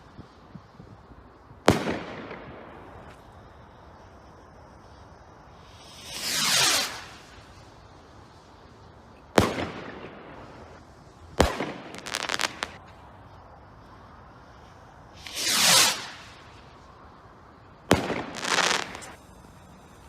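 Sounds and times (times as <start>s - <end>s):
firework whoosh: 0.0s - 20.0s
firework bangs: 1.5s - 3.2s, 5.6s - 7.9s, 9.2s - 12.9s, 15.1s - 16.8s, 17.6s - 19.2s
crackling pops: 9.3s - 13.1s.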